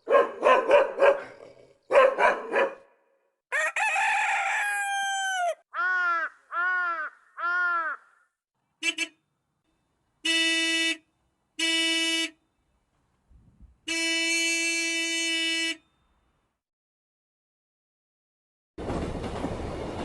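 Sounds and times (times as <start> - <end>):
car horn honking: 8.8 - 9.2, 10.2 - 12.4, 13.8 - 16.1.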